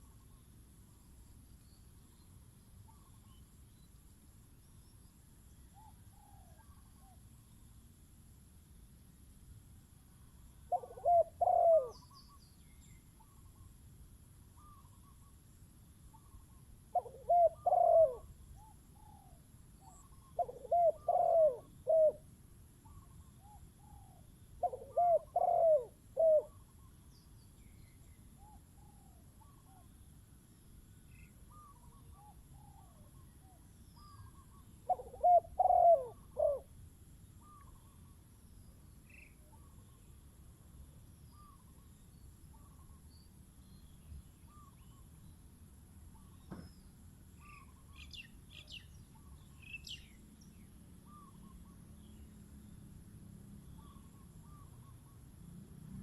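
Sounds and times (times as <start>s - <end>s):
faint short bird calls: 0.0s - 1.0s, 1.7s - 3.9s, 5.7s - 7.3s, 10.3s - 13.8s, 14.5s - 15.4s, 16.0s - 22.2s, 22.8s - 29.9s, 31.1s - 36.7s, 37.4s - 40.2s, 41.3s - 45.3s, 46.1s - 52.3s, 53.7s - 55.3s
dove cooing: 10.7s - 12.1s, 16.1s - 22.2s, 22.8s - 26.8s, 31.5s - 36.7s.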